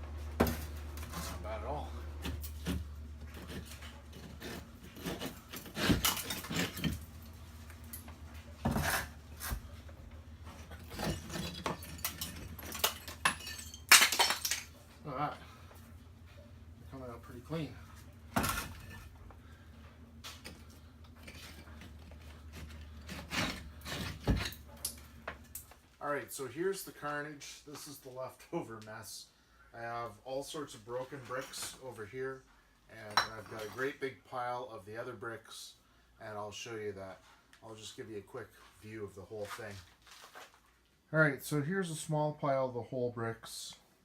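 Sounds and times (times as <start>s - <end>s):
steady low hum: 0.0s - 25.7s
bricks scraping and knocking: 2.2s - 7.3s, 8.6s - 9.6s, 10.5s - 14.6s, 20.4s - 24.8s.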